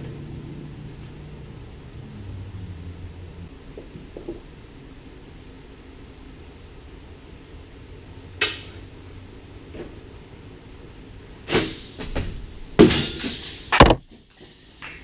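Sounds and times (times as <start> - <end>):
heavy knock: 13.8 - 14.0.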